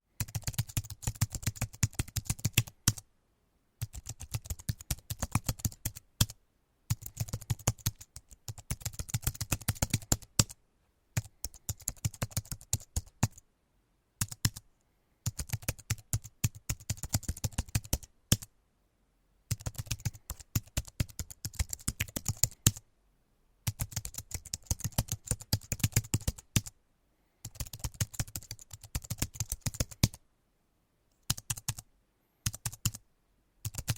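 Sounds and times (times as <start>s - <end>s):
computer keyboard typing: 0.2s - 3.0s, 3.8s - 10.6s, 11.2s - 13.4s, 14.2s - 14.6s, 15.2s - 18.5s, 19.5s - 22.8s, 23.7s - 26.7s, 27.4s - 30.2s, 31.2s - 31.8s, 32.4s - 33.0s, 33.6s - 33.9s.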